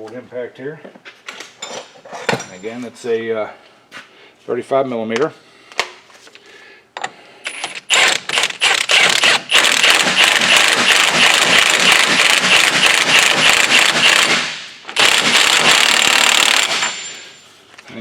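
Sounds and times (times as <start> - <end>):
impact wrench hammering: 7.0 - 17.4.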